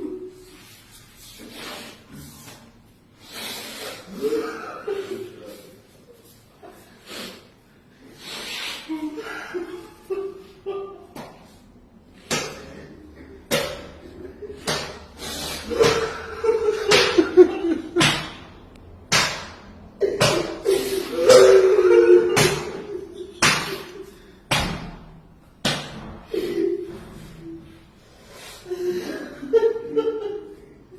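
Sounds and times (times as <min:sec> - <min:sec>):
sharp slaps: 0:12.2 - 0:12.8, 0:13.4 - 0:14.0, 0:14.6 - 0:16.2, 0:16.8 - 0:20.6, 0:22.4 - 0:26.3.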